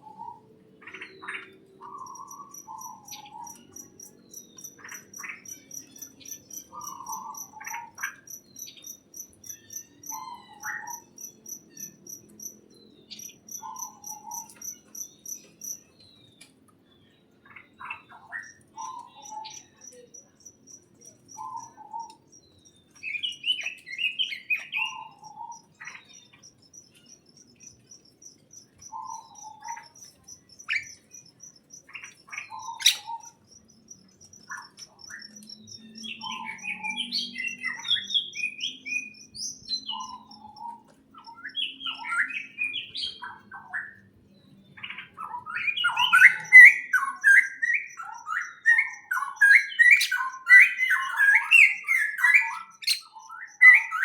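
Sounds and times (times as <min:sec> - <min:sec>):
birds chirping and twittering: 0:00.0 - 0:54.0.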